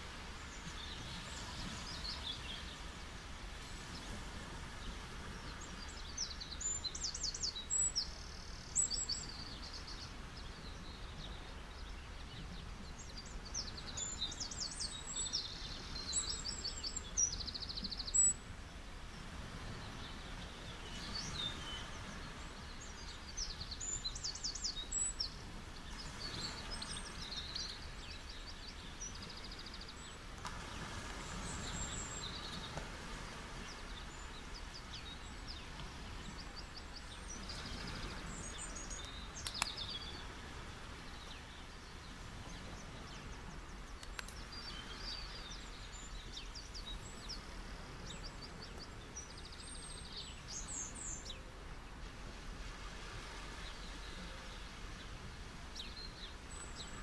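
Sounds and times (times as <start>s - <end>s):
soft surf: 0.0s - 57.0s
small birds chirping: 4.8s - 18.4s, 19.8s - 32.8s, 33.6s - 52.0s.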